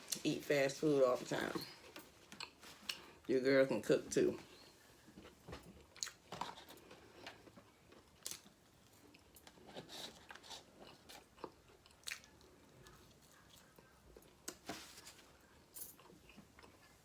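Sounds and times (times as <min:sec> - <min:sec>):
person chewing food: 0:02.2 - 0:03.2, 0:05.7 - 0:14.5, 0:16.0 - 0:17.0.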